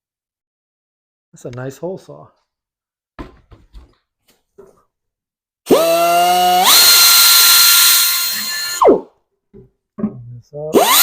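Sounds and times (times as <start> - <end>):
electric drill with hole saw whining: 5.7 - 9.1, 10.7 - 11.0.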